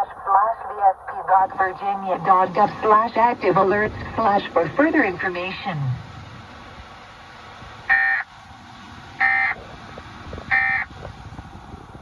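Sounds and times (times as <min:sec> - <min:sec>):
radio static: 0:00.0 - 0:06.0.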